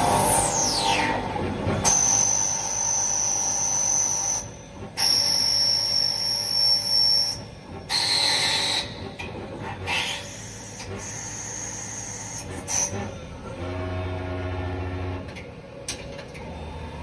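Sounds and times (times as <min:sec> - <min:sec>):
cnc machine cutting metal: 0:00.0 - 0:15.6.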